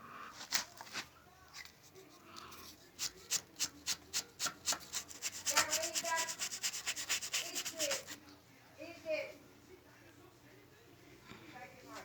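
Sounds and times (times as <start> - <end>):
sandpaper rubbing on wood: 3.0 - 8.2.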